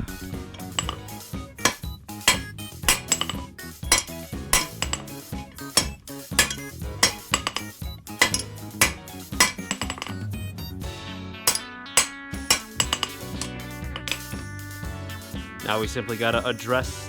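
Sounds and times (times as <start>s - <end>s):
background music: 0.0s - 17.0s
hammer striking steel on anvil: 0.6s - 10.2s, 11.5s - 14.4s.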